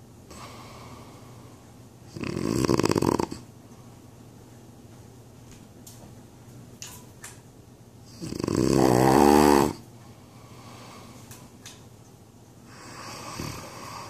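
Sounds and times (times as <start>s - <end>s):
quiet breathing: 0.3s - 1.8s, 10.0s - 11.6s, 12.6s - 14.0s
man snoring loudly: 2.1s - 3.4s, 8.2s - 9.8s, 12.8s - 14.0s.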